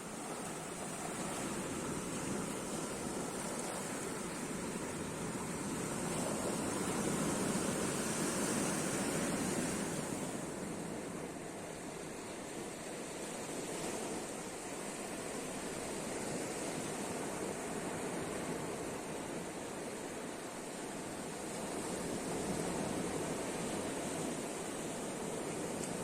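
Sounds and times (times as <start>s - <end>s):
sea waves washing on shore: 0.0s - 26.0s.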